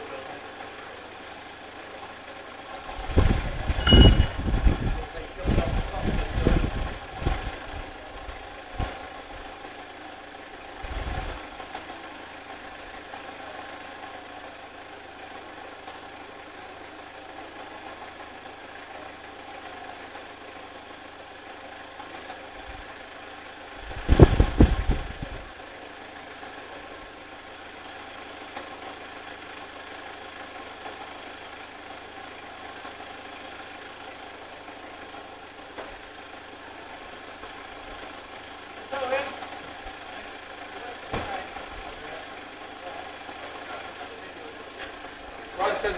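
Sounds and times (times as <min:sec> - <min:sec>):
diesel engine idling: 0:00.0 - 0:45.9.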